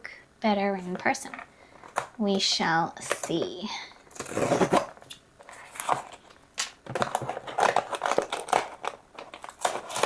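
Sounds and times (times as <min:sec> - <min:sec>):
packaging rustling and crinkling: 0:03.1 - 0:10.0.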